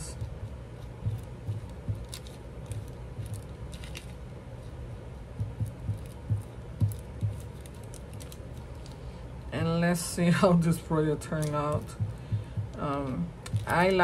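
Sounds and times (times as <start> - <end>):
paper rustling: 0.0 - 4.8, 5.4 - 9.2.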